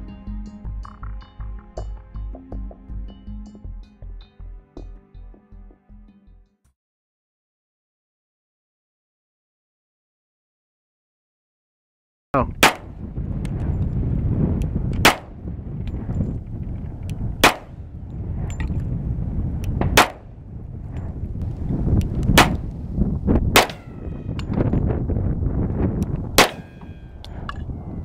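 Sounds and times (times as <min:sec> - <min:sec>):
low rumble: 0:12.4 - 0:28.0
handgun shots: 0:12.6 - 0:12.9, 0:15.0 - 0:15.3, 0:17.4 - 0:17.8, 0:19.9 - 0:20.3, 0:22.3 - 0:22.6, 0:23.6 - 0:24.0, 0:26.4 - 0:27.0
metallic ringing: 0:23.6 - 0:24.9, 0:26.4 - 0:28.0.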